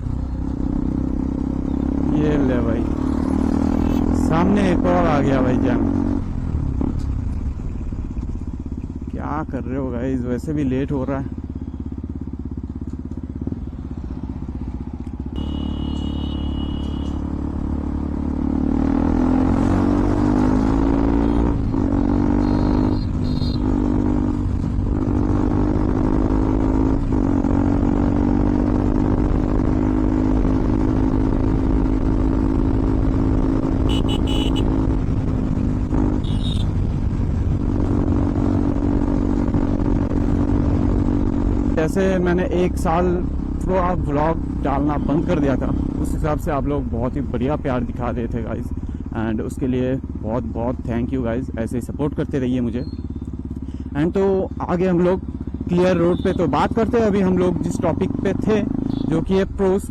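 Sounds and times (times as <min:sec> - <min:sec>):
motorcycle engine revving: 0:00.0 - 0:09.7, 0:10.6 - 0:51.2, 0:51.9 - 0:59.9
horn beeps from traffic: 0:15.3 - 0:17.4, 0:21.1 - 0:21.6, 0:22.4 - 0:23.9, 0:33.8 - 0:34.8, 0:36.1 - 0:36.8, 0:55.9 - 0:56.5, 0:58.8 - 0:59.2.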